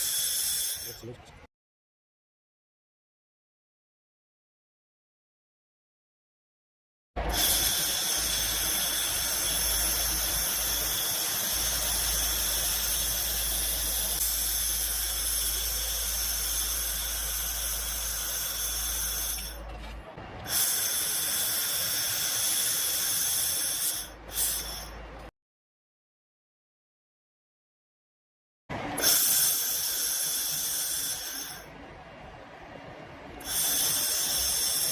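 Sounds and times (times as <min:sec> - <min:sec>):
laser welder hissing: 0:00.0 - 0:01.1, 0:07.2 - 0:19.6, 0:20.5 - 0:25.0, 0:29.0 - 0:31.7, 0:33.4 - 0:34.9
high whining tones: 0:07.2 - 0:20.8.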